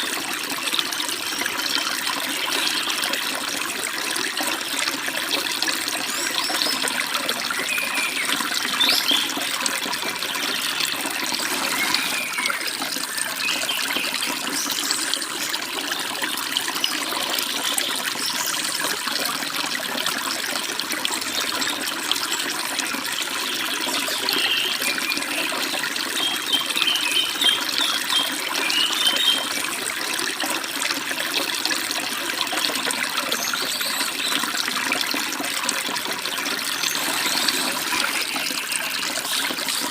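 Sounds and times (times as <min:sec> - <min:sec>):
stream babbling over rocks: 0:00.0 - 0:39.9
small birds chirping: 0:07.6 - 0:09.5, 0:23.5 - 0:29.5.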